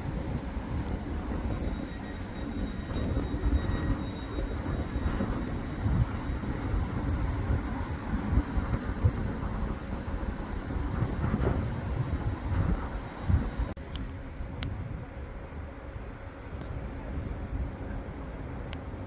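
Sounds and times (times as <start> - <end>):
train rumbling past: 0.0 - 19.0.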